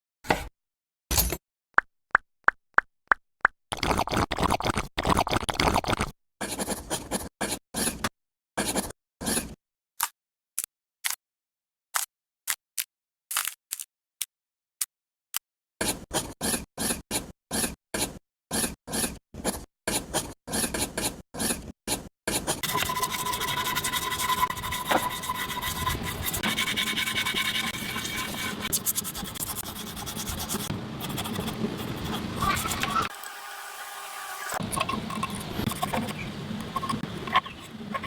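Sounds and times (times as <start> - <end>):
continuous scraping noise: 6.4 - 9.6, 15.8 - 33.1, 34.4 - 38.0
rhythmic scraping strokes: 22.6 - 33.1.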